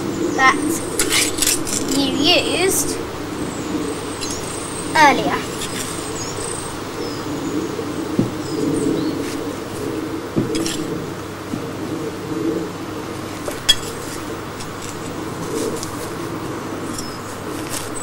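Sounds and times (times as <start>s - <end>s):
small birds chirping: 0.0s - 10.9s, 13.5s - 18.0s
short knocks: 8.2s - 8.4s.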